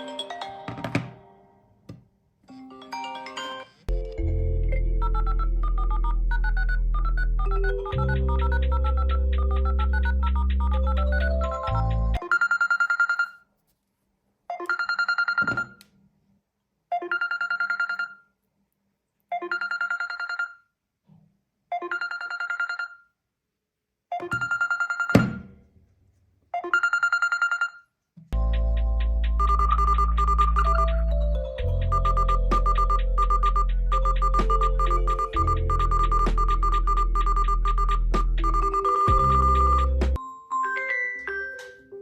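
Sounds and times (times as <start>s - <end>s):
pulsing electronic ringtone: 2.9s - 13.4s, 19.4s - 20.6s, 21.8s - 23.0s, 24.2s - 25.2s, 26.6s - 27.8s, 28.4s - 41.5s
electronic ringtone melody with bass: 3.0s - 12.7s, 28.4s - 41.6s.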